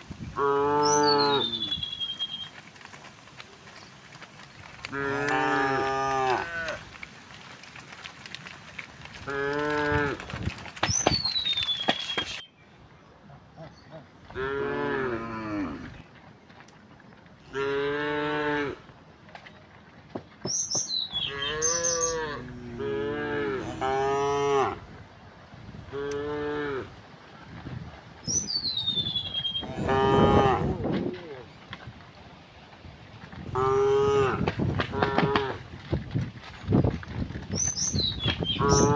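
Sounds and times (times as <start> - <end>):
cattle mooing: 4.9 - 6.8, 14.3 - 16.0, 17.5 - 18.8, 21.3 - 24.9, 25.9 - 26.9, 29.6 - 31.4, 33.5 - 35.6.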